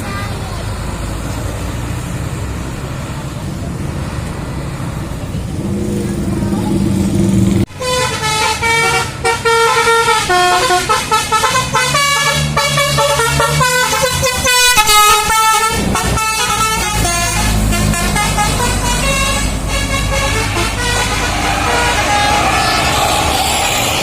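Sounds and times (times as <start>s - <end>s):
musical bus air horn tune: 7.7s - 23.6s.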